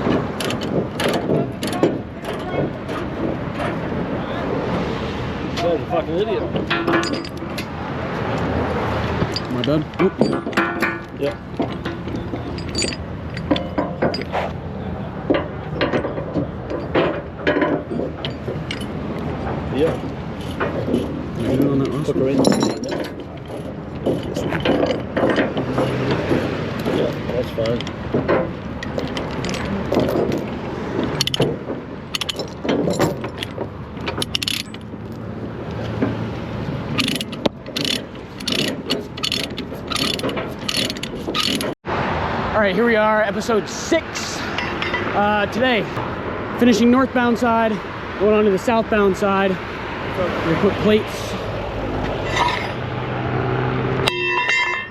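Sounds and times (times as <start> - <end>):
metallic clanks and rattles: 0.0 - 4.0, 6.6 - 7.8, 9.2 - 14.5, 15.3 - 19.0, 19.8 - 35.2, 36.9 - 41.8
engine rumble: 0.0 - 43.6.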